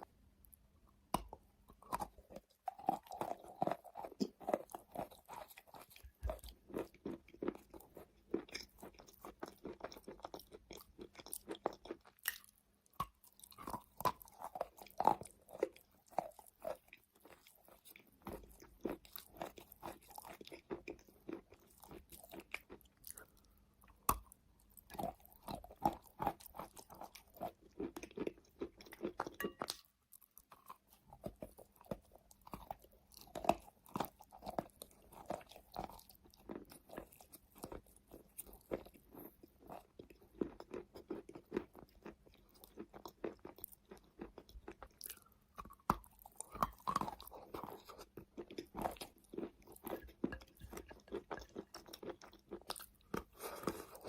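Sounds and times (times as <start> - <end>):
chalk being chewed: 30.2 - 54.0.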